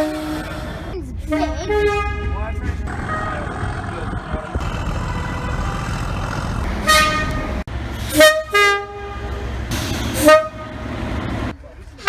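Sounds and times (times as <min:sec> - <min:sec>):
train horn blasts: 0:00.0 - 0:00.7, 0:04.7 - 0:09.4, 0:10.2 - 0:10.8
train low rumble: 0:00.0 - 0:12.0.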